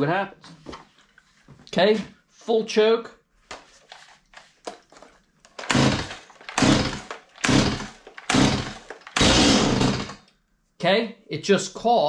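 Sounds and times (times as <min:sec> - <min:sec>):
chainsaw rope pulls cranking engine: 0:05.6 - 0:10.2
chainsaw engine coughing: 0:05.7 - 0:10.1.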